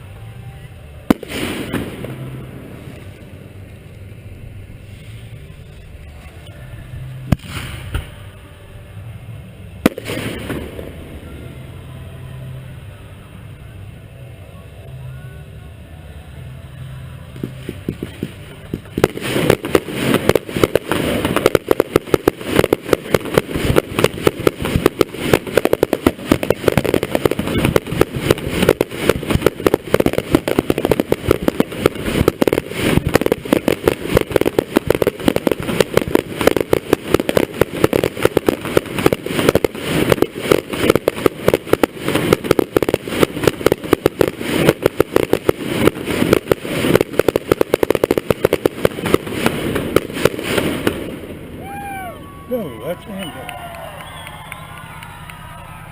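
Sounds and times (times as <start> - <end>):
aerial firework bursts: 1.1 - 3.6, 7.2 - 8.3, 9.8 - 11.8, 17.4 - 51.7.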